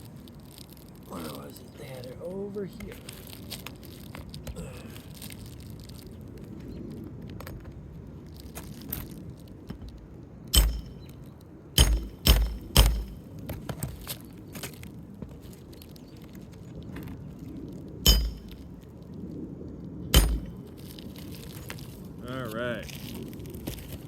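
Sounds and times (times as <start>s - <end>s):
light ticks and scrapes: 2.7s - 7.7s
metal tool knocking on roofing nail: 11.8s - 13.2s.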